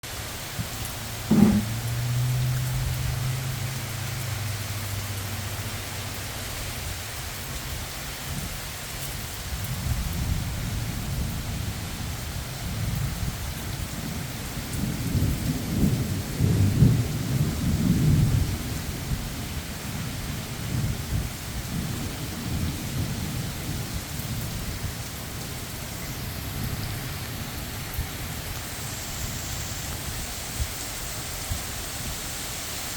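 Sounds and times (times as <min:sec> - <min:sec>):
heavy rain falling: 0:00.0 - 0:32.9
low rumbling: 0:00.6 - 0:06.2.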